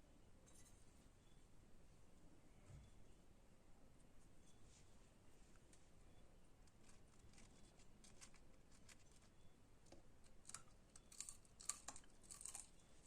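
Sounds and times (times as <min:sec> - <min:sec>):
crunching of fried french fries: 0:06.7 - 0:09.3, 0:10.2 - 0:12.9.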